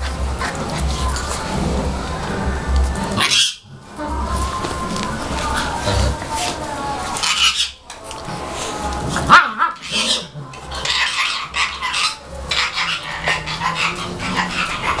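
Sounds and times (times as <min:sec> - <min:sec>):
dogs growling low: 0:00.0 - 0:06.4, 0:08.3 - 0:15.0.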